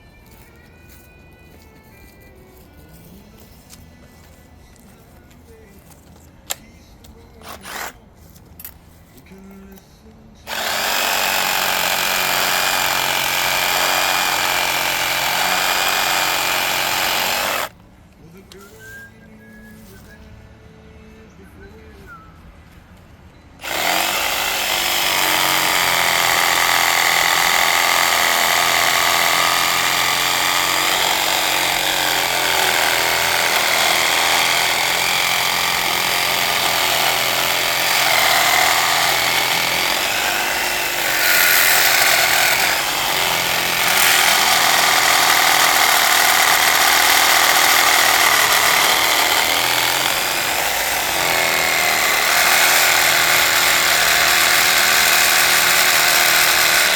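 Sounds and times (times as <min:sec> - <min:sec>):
reciprocating saw cutting metal pipe: 0:10.5 - 0:17.8, 0:23.6 - 0:56.9.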